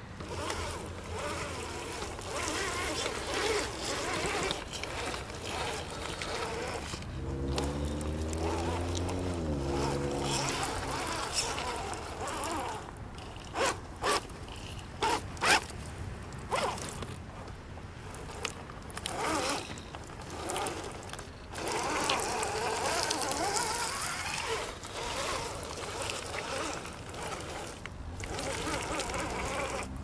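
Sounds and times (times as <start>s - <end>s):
rc truck electric motor whining: 0.0s - 15.7s, 16.5s - 30.0s.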